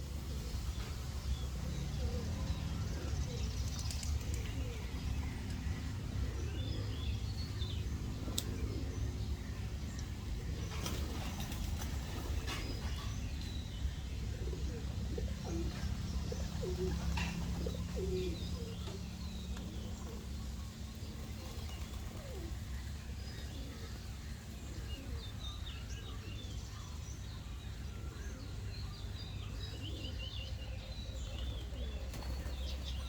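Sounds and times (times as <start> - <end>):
doves cooing: 0.0 - 26.3, 29.3 - 33.0
small birds chirping: 0.0 - 33.0.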